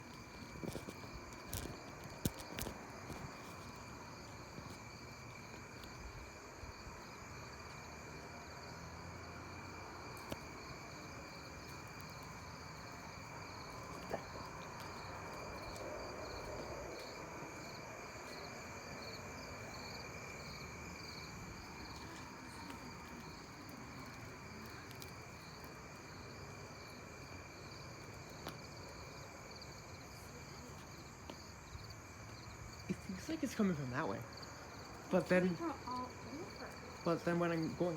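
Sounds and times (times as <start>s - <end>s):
insects chirring: 0.0s - 37.9s.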